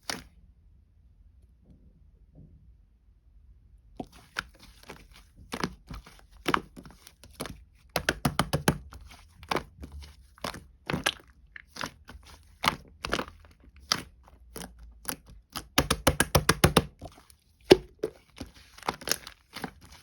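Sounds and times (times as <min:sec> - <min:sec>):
slime clicking and popping: 0:06.4 - 0:09.7, 0:10.4 - 0:17.1.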